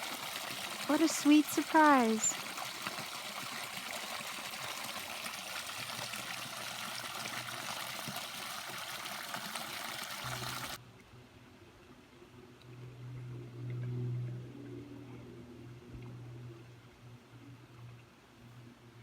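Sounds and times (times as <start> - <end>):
water running and trickling: 0.0 - 10.8.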